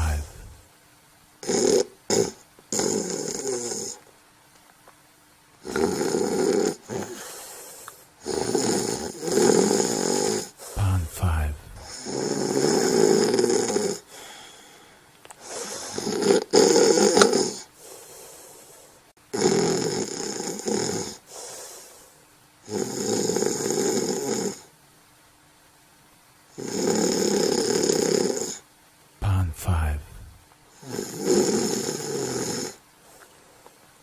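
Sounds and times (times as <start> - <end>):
person snoring: 0.0 - 0.6, 1.4 - 4.0, 5.6 - 18.5, 19.4 - 21.9, 22.6 - 24.7, 26.6 - 28.6, 29.2 - 32.8.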